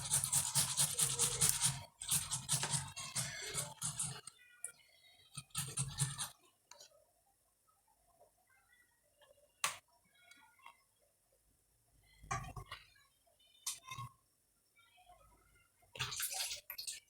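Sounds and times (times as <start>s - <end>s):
tomatoes scraping on grater: 0.0s - 4.3s, 5.4s - 6.3s.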